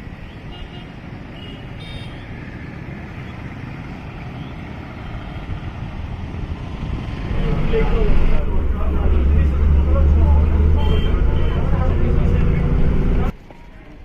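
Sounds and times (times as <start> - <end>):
passenger train rumbling: 6.6 - 13.4.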